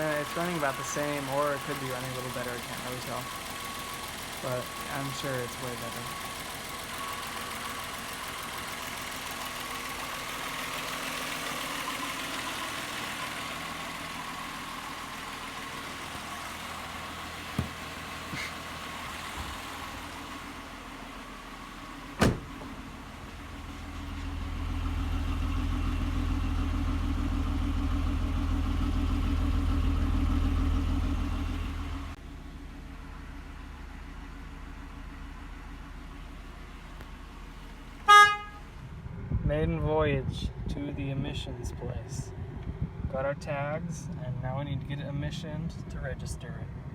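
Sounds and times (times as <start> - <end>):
car engine running: 0.0 - 46.9.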